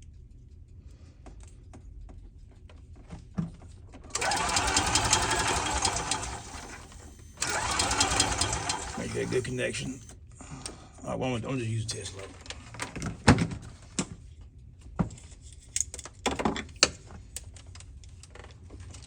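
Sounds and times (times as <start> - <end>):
golf cart engine cranking: 4.1 - 10.1.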